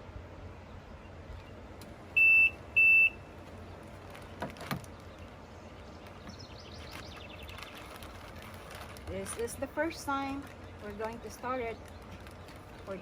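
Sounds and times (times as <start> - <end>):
short electronic beeps: 2.2 - 3.2.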